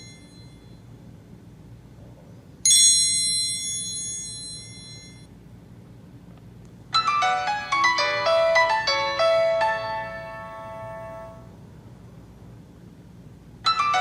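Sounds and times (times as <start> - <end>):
piano-like ringtone melody: 0.0 - 0.7, 2.7 - 5.3, 6.9 - 11.5, 13.6 - 14.0.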